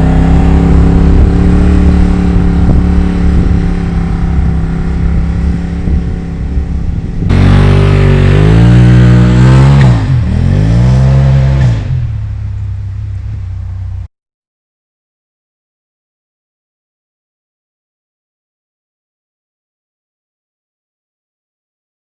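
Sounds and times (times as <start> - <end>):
engine idling and revving: 0.0 - 14.1.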